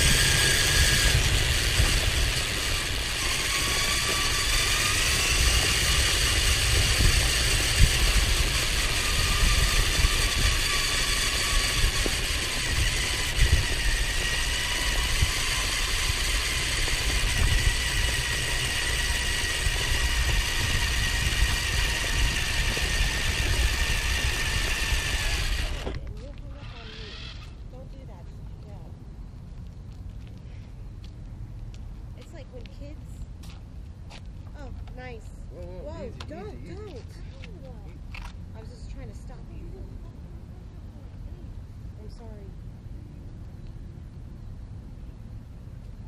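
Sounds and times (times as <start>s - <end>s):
rc car electric motor whining: 0.0s - 27.7s.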